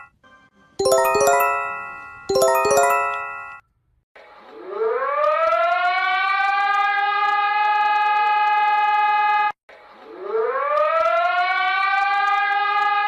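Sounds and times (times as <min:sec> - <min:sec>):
attention chime: 0:00.8 - 0:03.6.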